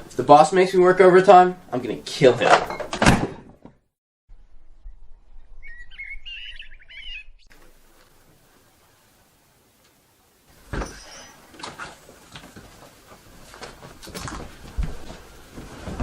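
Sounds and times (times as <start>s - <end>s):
small bird chirping: 4.8s - 7.5s.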